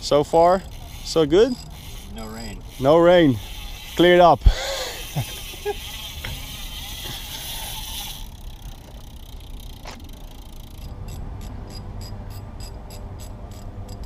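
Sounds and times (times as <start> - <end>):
mechanical ratcheting clicks: 0.5 - 14.0.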